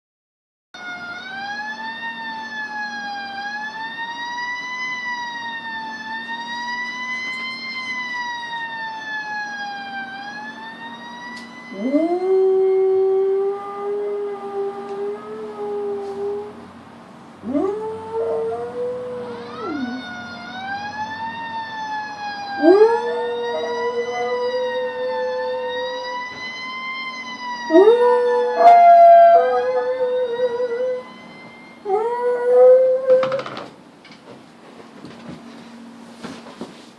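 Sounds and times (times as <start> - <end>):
fire truck siren wailing: 0.8 - 33.5
faint low hum: 4.4 - 34.2
dog howling: 11.7 - 16.6, 17.4 - 20.1, 22.6 - 25.8, 27.7 - 31.0.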